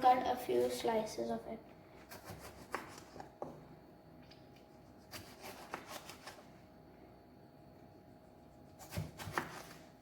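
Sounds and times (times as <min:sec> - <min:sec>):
knife slicing tomato: 0:02.0 - 0:03.4, 0:04.8 - 0:06.5, 0:08.4 - 0:10.0.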